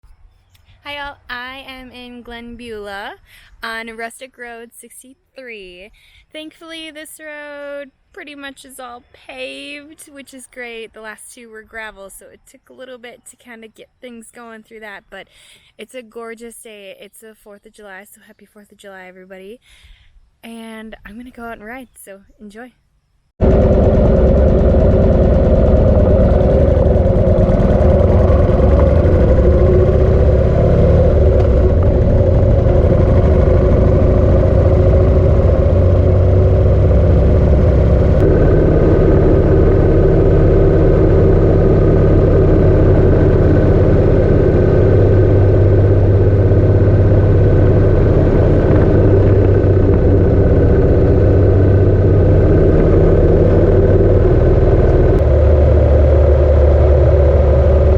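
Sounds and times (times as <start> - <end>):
motorcycle engine running: 23.4 - 57.9.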